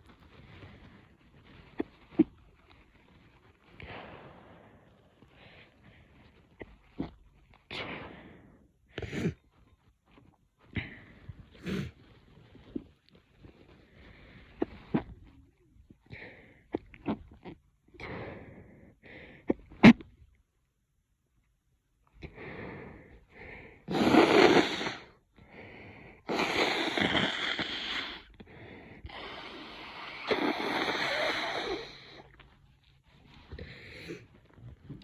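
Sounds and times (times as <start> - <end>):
woman blowing her nose: 23.9 - 25.2, 26.3 - 28.3, 29.1 - 32.2.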